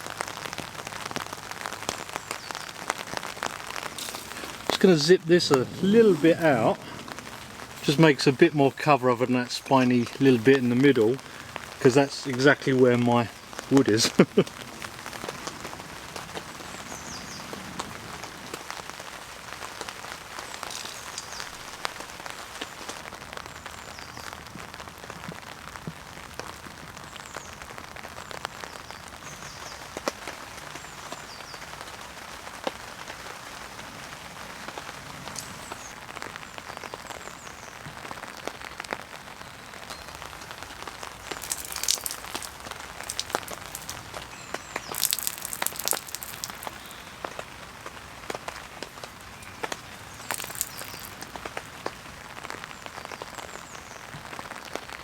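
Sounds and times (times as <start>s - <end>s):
heavy rain on tent fabric: 0.0s - 55.0s
rustle: 0.0s - 55.0s
high bird chirps: 43.2s - 47.2s, 49.4s - 51.2s.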